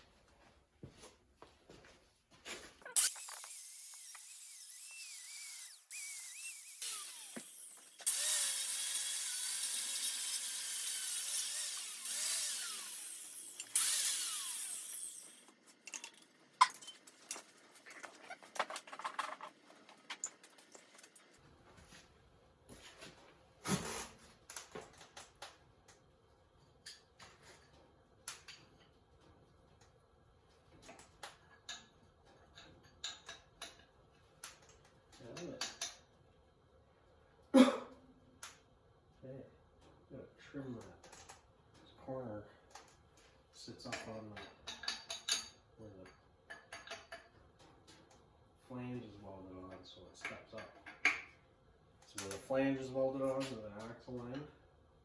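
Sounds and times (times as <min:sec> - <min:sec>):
angle grinder on steel: 0:03.0 - 0:15.5
clicks and knocks of metal: 0:30.5 - 0:36.1, 0:42.7 - 0:48.2.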